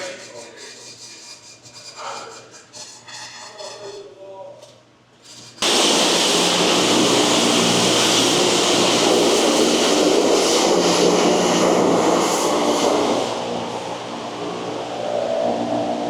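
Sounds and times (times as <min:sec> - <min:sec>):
high-pressure water spray hissing: 0:05.6 - 0:14.4
low steady hum: 0:07.0 - 0:16.0.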